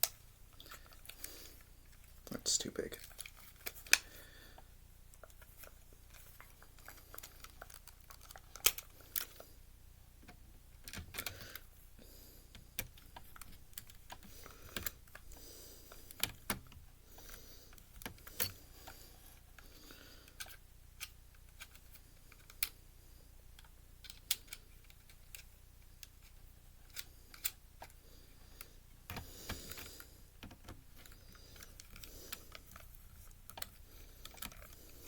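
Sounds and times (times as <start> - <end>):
small clicks and clinks of parts: 5.1 - 9.5, 10.2 - 11.7, 12.5 - 22.8, 23.5 - 35.0.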